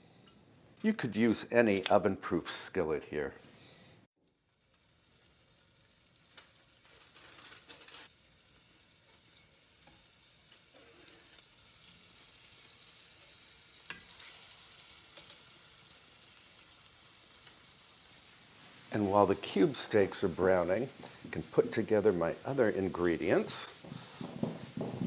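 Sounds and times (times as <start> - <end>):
meat sizzling in a pan: 4.3 - 23.3.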